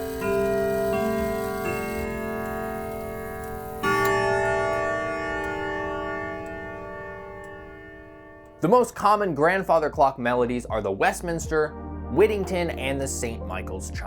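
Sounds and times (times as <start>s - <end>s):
clock ticking: 0.0s - 8.9s
clock chime rods struck: 0.0s - 9.0s.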